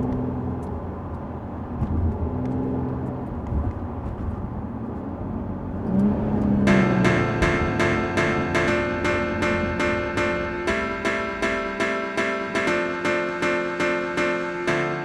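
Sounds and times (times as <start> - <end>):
car engine revving while driving: 0.0 - 11.8.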